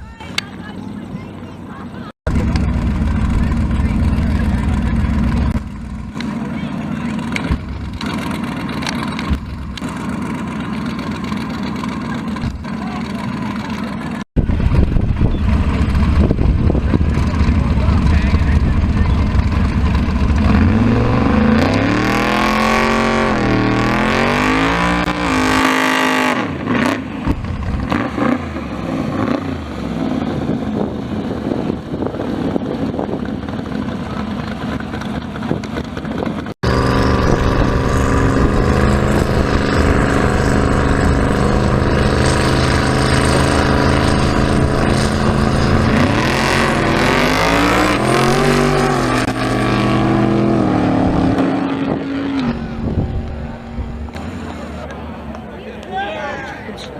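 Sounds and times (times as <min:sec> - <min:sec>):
race car engines revving: 0:00.2 - 0:56.9
engine idling loudly: 0:02.3 - 0:21.5, 0:29.6 - 0:49.3.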